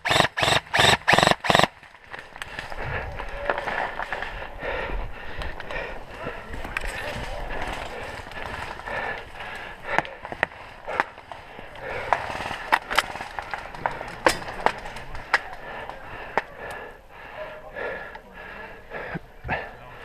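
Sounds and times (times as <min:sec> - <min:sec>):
airsoft gun shots: 0:00.0 - 0:01.7
faint distant voices: 0:05.7 - 0:20.0.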